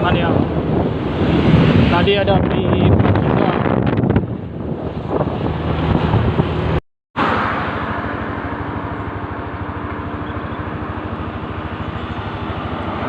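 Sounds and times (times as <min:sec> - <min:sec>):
road noise: 0:00.0 - 0:13.0
vehicle engine running: 0:07.6 - 0:13.0.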